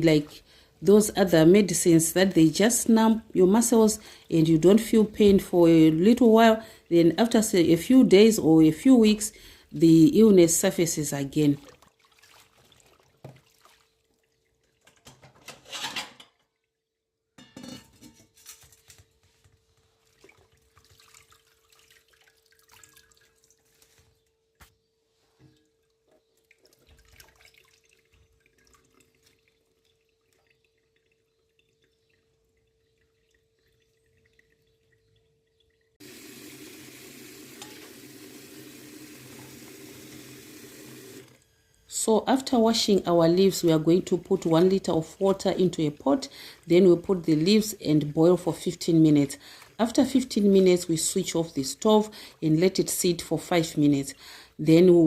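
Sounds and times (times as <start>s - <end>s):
water splashing and dripping: 11.5s - 15.1s, 20.0s - 24.0s, 25.8s - 36.0s
tap running: 36.0s - 41.4s.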